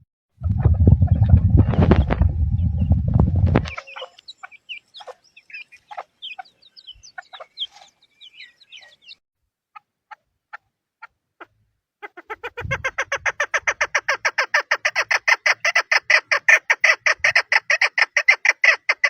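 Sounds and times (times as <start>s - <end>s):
loud low rumble: 0.4s - 3.7s
partridges chirping and clucking: 0.4s - 19.0s.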